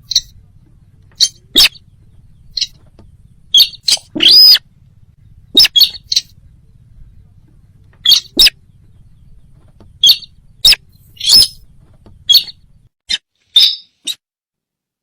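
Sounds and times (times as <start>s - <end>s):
short sharp bird calls: 0.0s - 0.4s, 1.1s - 4.7s, 5.4s - 6.4s, 8.0s - 14.2s.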